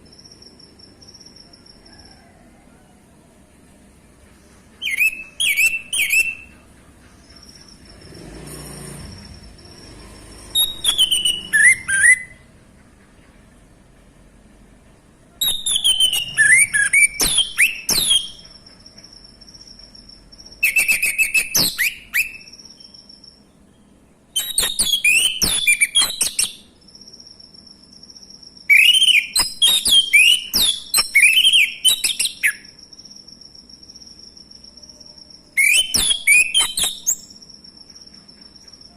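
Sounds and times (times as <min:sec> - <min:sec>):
faint steady high tone: 0:00.0 - 0:08.0, 0:32.6 - 0:38.9
thrush singing whistles: 0:04.8 - 0:06.7, 0:07.3 - 0:12.5, 0:15.4 - 0:23.5, 0:24.3 - 0:38.9.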